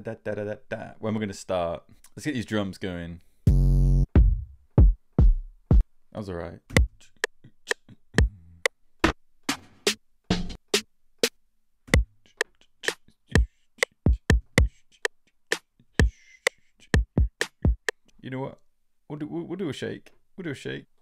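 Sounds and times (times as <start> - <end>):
drum machine beat: 3.5 - 5.8, 6.8 - 10.8, 11.9 - 18.0.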